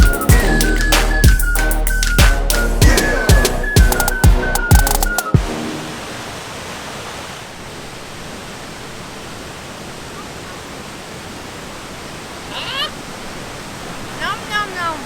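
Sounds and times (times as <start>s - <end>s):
stream or waterfall rushing: 5.2s - 15.0s.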